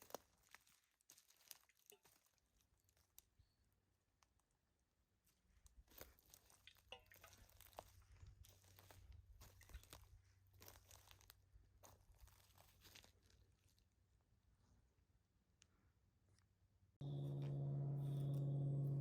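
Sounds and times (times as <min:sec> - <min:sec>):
low hum: 0:17.0 - 0:19.0.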